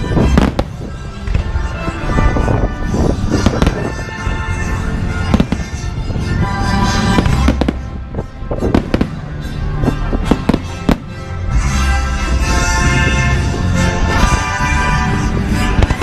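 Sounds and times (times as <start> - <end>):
fireworks bangs: 0.0 - 11.5
low rumble of blasts: 0.0 - 16.0
music over loudspeakers: 0.0 - 16.0.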